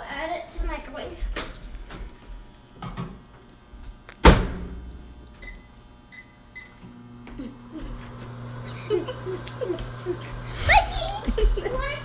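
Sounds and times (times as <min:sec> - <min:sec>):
microwave door shutting with a thud: 0:04.2 - 0:05.5.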